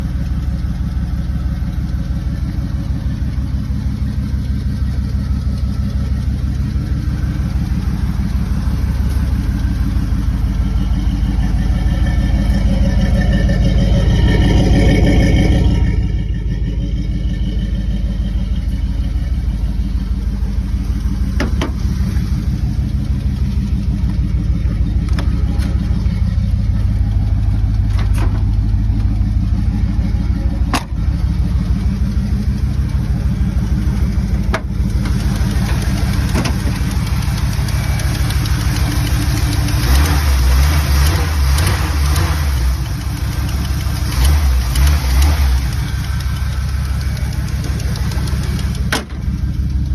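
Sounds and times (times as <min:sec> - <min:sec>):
car engine idling with fast tick: 0:00.0 - 0:49.9
sharp clicks: 0:42.8 - 0:49.9.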